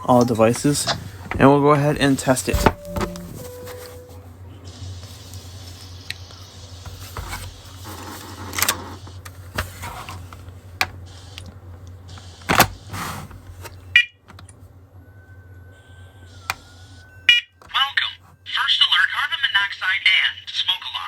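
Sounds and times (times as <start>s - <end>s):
steady low hum: 0.0s - 13.7s.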